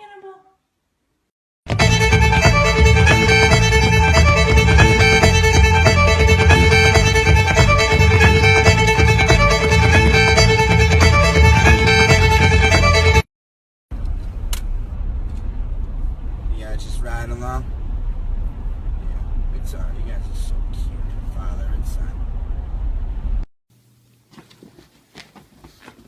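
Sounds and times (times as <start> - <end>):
fiddle music with steady beat: 1.7 - 13.3.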